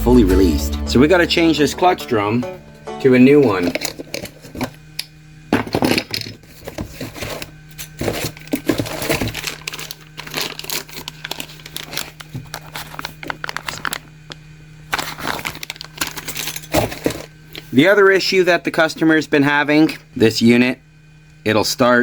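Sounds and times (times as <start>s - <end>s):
steady low hum: 0.0s - 10.0s
chainsaw parts clattering: 15.9s - 17.3s.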